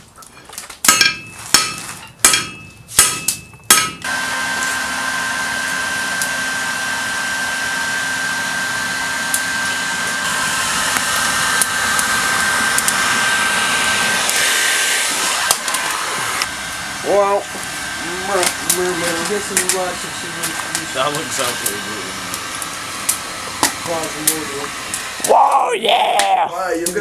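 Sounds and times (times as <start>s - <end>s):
metal hammer strike: 0.8s - 4.1s
hairdryer blowing air: 4.0s - 25.4s.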